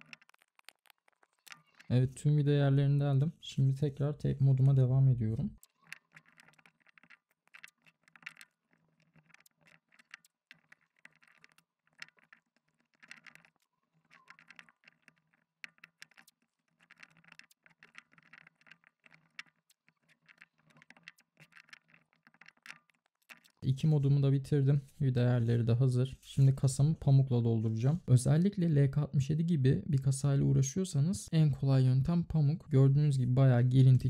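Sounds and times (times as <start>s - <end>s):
tape crackling and clicking: 0.0s - 2.0s, 4.5s - 23.9s.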